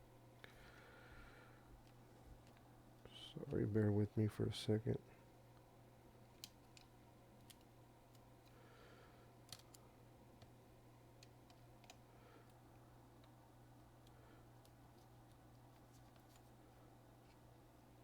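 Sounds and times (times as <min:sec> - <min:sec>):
steady low hum: 0:00.0 - 0:18.0
faint clicks of parts handled: 0:01.8 - 0:02.7, 0:05.6 - 0:08.6, 0:09.4 - 0:10.6, 0:11.2 - 0:13.4, 0:14.0 - 0:17.5.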